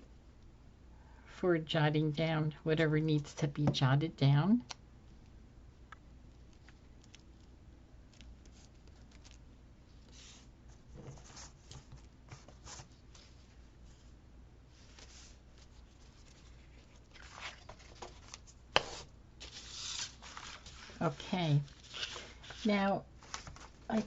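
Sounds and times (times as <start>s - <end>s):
paper rustling: 8.1s - 14.1s, 14.8s - 24.0s.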